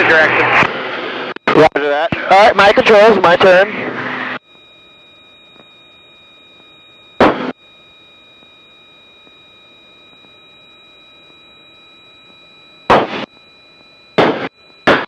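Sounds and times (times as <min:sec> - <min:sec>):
burst of static: 0:00.0 - 0:04.4, 0:07.2 - 0:07.5, 0:12.9 - 0:13.3, 0:14.2 - 0:15.0
intercom line hissing: 0:00.0 - 0:04.4
thin electrical whines: 0:00.0 - 0:15.0.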